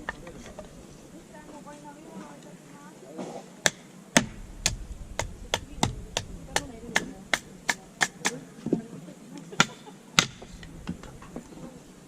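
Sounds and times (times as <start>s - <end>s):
firewood being split: 3.7s - 8.4s.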